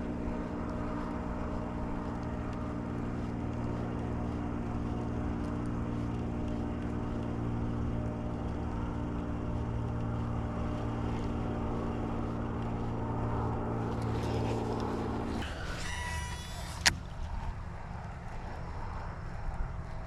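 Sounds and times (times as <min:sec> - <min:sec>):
motor humming: 0:00.0 - 0:18.3
short whirring: 0:13.9 - 0:17.6.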